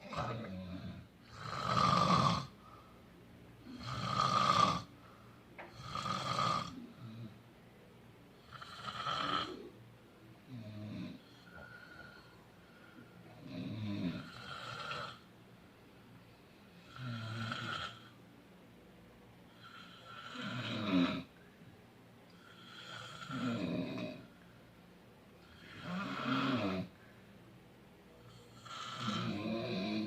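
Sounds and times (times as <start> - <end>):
person snoring: 0.0 - 2.8, 3.6 - 4.9, 5.7 - 7.3, 8.4 - 9.7, 10.5 - 12.4, 13.3 - 15.2, 16.7 - 18.2, 19.5 - 21.3, 22.3 - 24.3, 25.4 - 27.0, 28.3 - 30.0
quiet breathing: 0.0 - 30.0.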